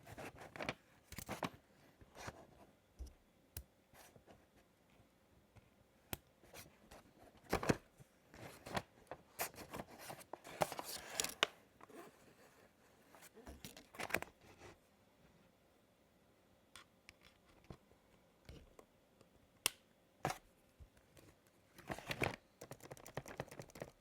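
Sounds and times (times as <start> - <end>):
packaging clicks and taps: 21.8 - 24.0.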